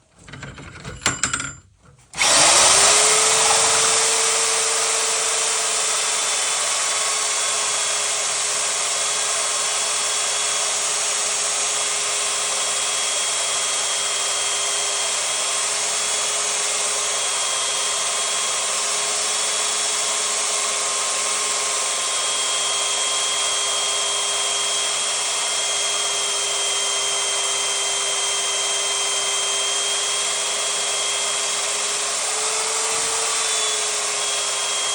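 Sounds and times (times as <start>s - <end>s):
knocks: 0.2s - 2.1s
drilling machine motor whine: 2.1s - 34.9s.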